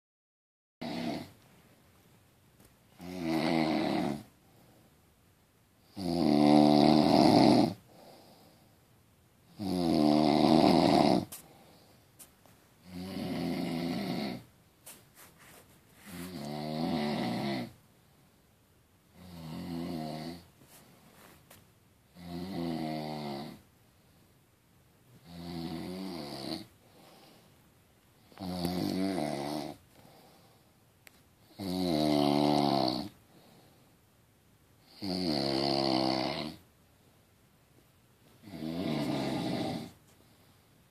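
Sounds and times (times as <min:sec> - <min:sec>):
person snoring: 0:00.8 - 0:01.4, 0:02.9 - 0:04.3, 0:05.8 - 0:08.5, 0:09.5 - 0:11.6, 0:12.8 - 0:14.5, 0:16.0 - 0:17.8, 0:19.2 - 0:20.5, 0:22.1 - 0:23.7, 0:25.2 - 0:27.4, 0:28.2 - 0:30.4, 0:31.4 - 0:33.5, 0:34.8 - 0:36.6, 0:38.4 - 0:40.0.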